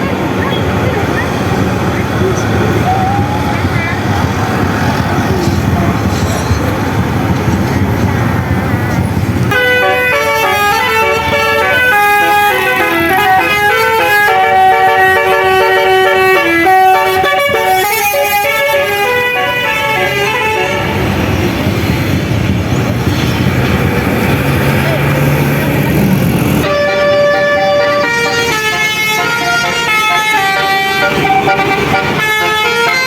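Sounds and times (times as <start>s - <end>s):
loud vehicle noise: 0.0s - 33.0s
musical bus air horn: 9.5s - 21.2s, 26.6s - 33.0s.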